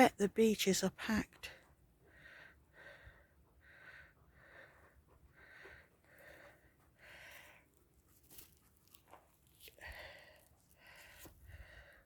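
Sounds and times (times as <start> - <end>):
heavy breathing: 2.1 - 7.8.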